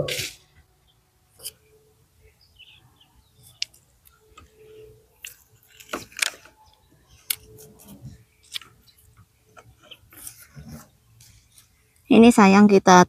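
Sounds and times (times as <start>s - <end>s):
dry plants rustling: 3.3s - 12.2s.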